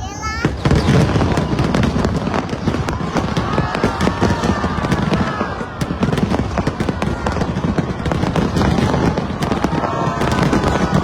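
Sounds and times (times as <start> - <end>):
fireworks cracking and crackling: 0.0 - 11.0
booming firework bursts: 0.2 - 11.0.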